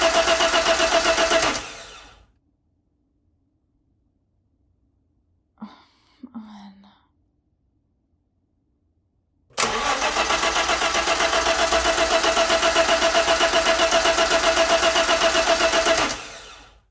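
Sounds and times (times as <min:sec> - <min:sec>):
car engine cranking: 0:00.0 - 0:02.2, 0:09.6 - 0:16.8.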